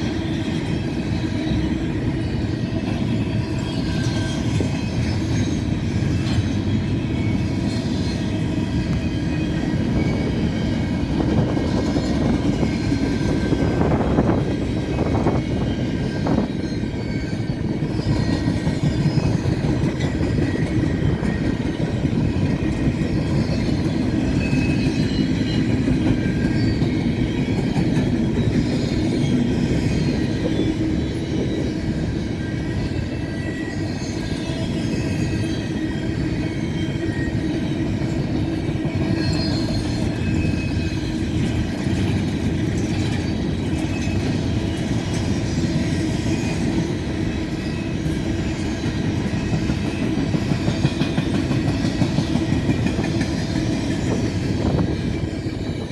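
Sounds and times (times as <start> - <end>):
steel wheels rumbling on rail: 0.0 - 55.9
train cars knocking: 38.0 - 55.9.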